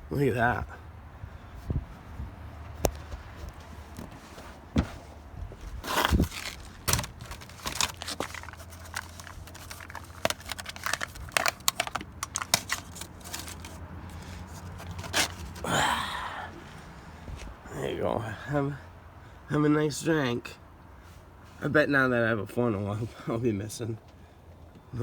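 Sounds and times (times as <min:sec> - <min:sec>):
plastic bottle crackling: 0:05.8 - 0:15.7.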